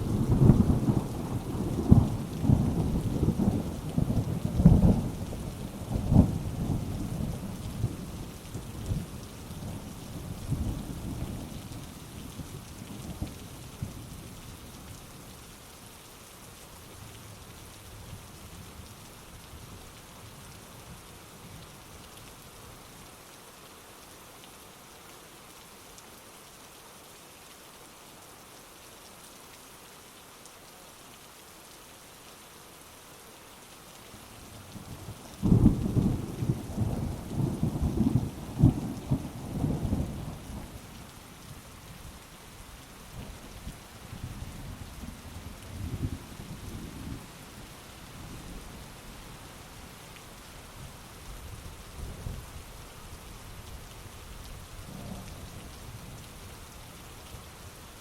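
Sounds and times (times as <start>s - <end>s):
crackling peal of thunder: 0.0s - 5.1s, 35.4s - 40.8s
heavy rain: 0.0s - 58.0s.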